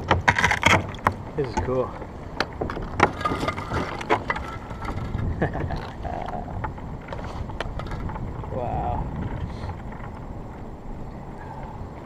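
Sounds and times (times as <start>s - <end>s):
sharp knocks and clicks: 0.0s - 8.5s
low wind rumble on microphone: 0.0s - 12.0s
faint scrape: 7.1s - 7.6s.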